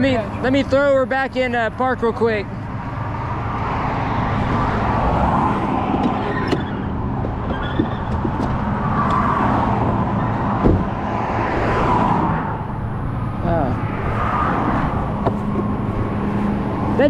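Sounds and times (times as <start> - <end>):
vehicles passing at speed: 0.0 - 17.0
loud thump: 10.5 - 11.1.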